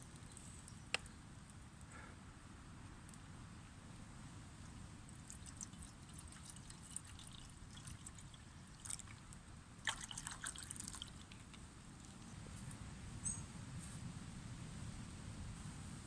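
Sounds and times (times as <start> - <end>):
water trickling and dripping: 5.0 - 12.2.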